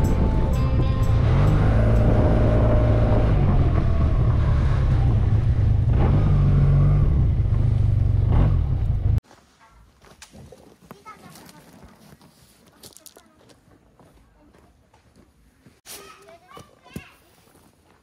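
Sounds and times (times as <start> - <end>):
motorcycle engine running: 0.0 - 9.2.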